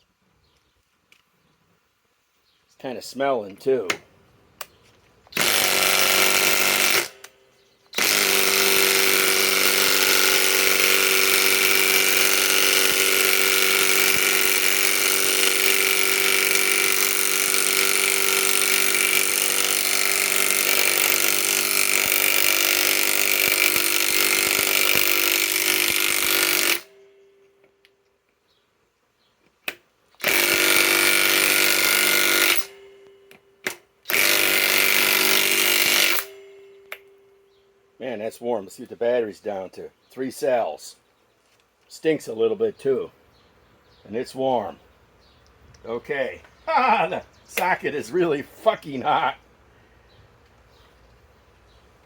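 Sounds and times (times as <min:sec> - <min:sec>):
impact wrench hammering: 0:05.4 - 0:07.3, 0:08.0 - 0:27.0, 0:29.7 - 0:37.2.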